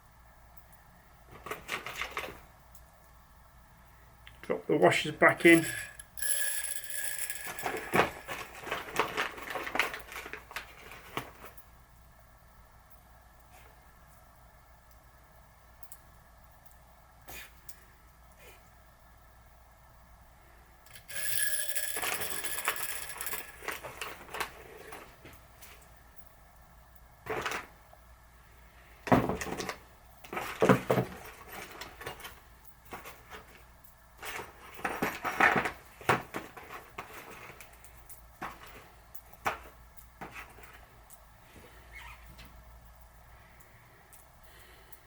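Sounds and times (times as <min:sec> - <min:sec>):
steel parts clinking and rattling: 0:05.2 - 0:11.6, 0:20.9 - 0:25.8, 0:29.3 - 0:41.2.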